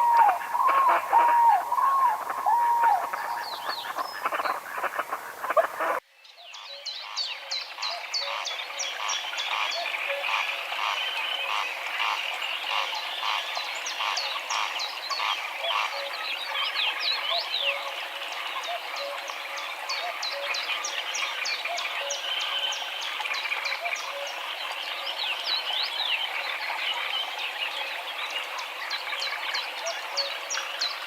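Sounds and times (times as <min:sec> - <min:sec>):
chorus of rhythmic calls: 0:00.0 - 0:06.0
geese calling: 0:00.0 - 0:06.0
small birds chirping: 0:00.0 - 0:07.5.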